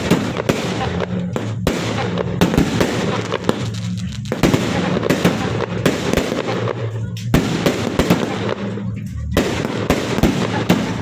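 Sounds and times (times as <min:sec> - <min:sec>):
firecrackers banging: 0:00.0 - 0:11.0
low hum: 0:00.0 - 0:11.0.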